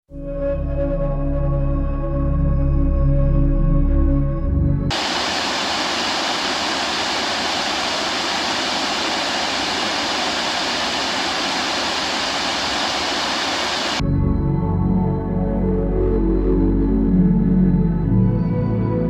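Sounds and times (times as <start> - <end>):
waterfall rushing: 4.9 - 14.0.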